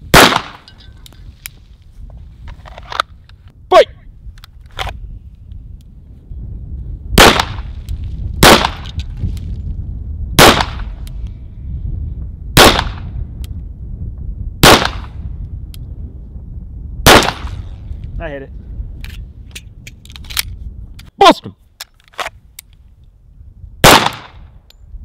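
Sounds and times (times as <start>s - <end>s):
pistol shots with echo: 0.1s - 0.7s, 7.2s - 7.7s, 8.4s - 8.9s, 10.4s - 10.9s, 12.6s - 13.0s, 14.6s - 15.1s, 17.0s - 17.7s, 23.8s - 24.4s.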